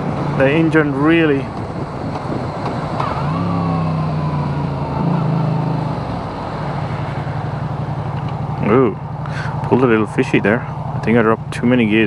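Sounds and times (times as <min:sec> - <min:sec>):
wind noise: 0:00.0 - 0:08.6
motorcycle engine braking whine: 0:00.0 - 0:12.0.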